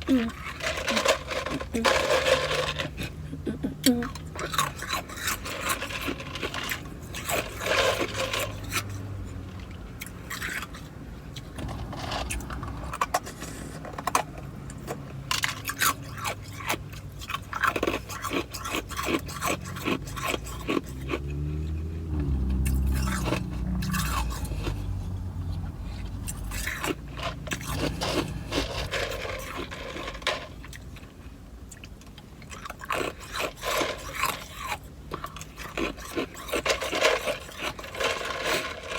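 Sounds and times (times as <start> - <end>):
ice being crunched and chewed: 0.0 - 38.9
low rumble: 21.7 - 29.3.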